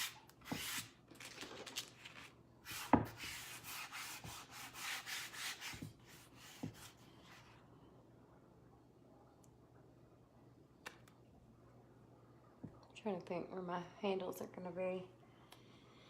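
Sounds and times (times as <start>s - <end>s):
hands rubbing sheet on wood: 2.7s - 7.5s.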